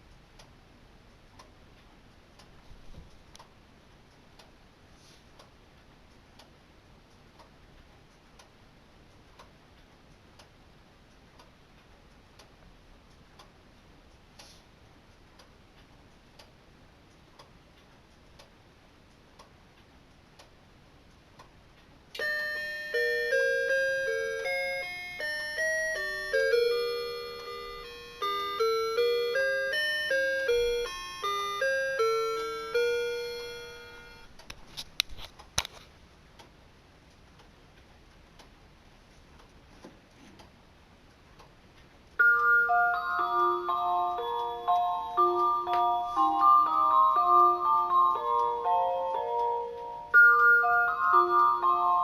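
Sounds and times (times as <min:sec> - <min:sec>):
clock ticking faintly: 0:00.0 - 0:33.6, 0:34.2 - 0:52.0
chiming alarm melody: 0:22.2 - 0:34.3, 0:42.2 - 0:52.0.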